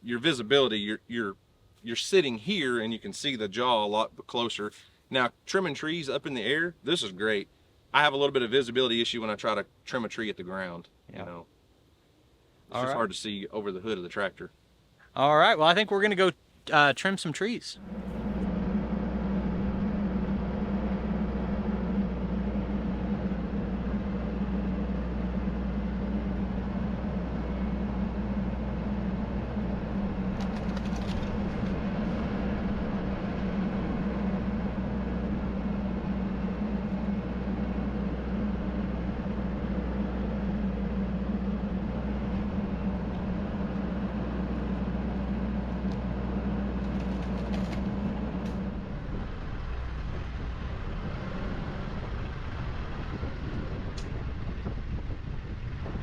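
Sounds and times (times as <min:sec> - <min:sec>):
diesel tractor engine running: 0:17.8 - 0:56.0
brief crackle: 0:30.3 - 0:31.8.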